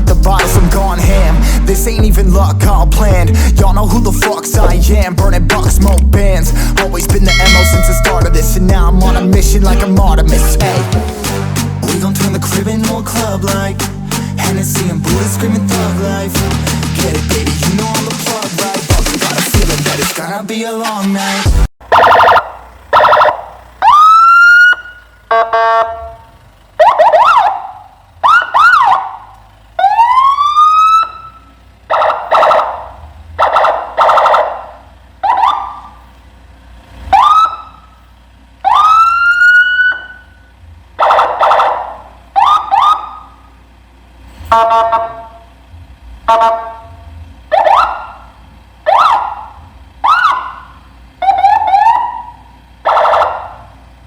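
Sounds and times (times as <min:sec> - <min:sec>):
electronic siren whoops and warbles: 0:21.9 - 0:26.2, 0:26.8 - 0:29.2, 0:29.8 - 0:35.9, 0:37.1 - 0:37.8, 0:38.6 - 0:40.4, 0:41.0 - 0:43.4, 0:47.5 - 0:53.7.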